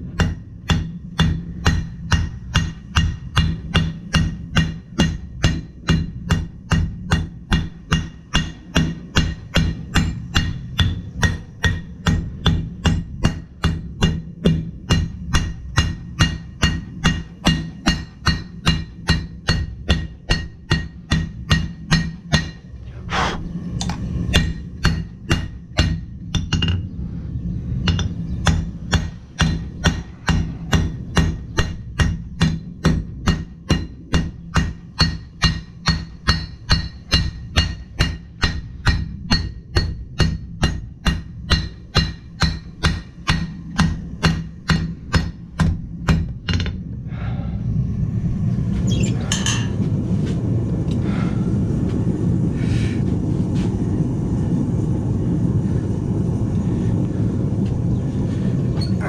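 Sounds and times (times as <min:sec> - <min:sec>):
hammering on anvil: 0:00.0 - 0:22.8, 0:23.8 - 0:27.0, 0:27.8 - 0:46.9, 0:49.3 - 0:49.8
steady low hum: 0:00.0 - 0:59.0.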